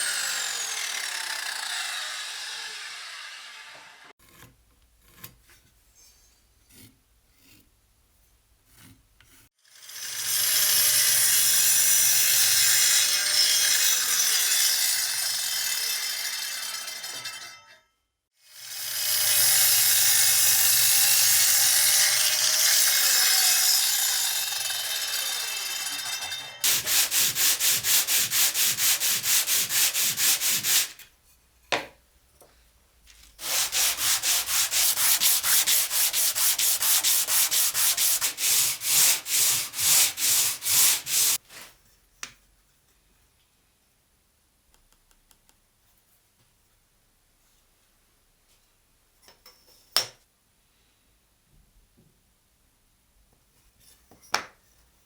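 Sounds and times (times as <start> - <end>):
sandpaper rubbing on wood: 26.6 - 31.0, 33.4 - 41.4.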